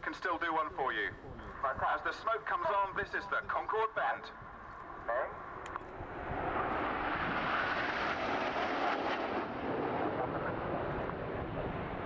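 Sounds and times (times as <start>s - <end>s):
jet aircraft flying past: 4.3s - 12.0s.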